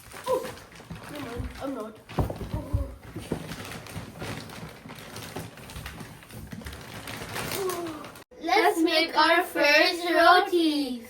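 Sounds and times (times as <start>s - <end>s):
light clatter and rustling: 0.1s - 8.2s
thumps: 1.0s - 7.0s.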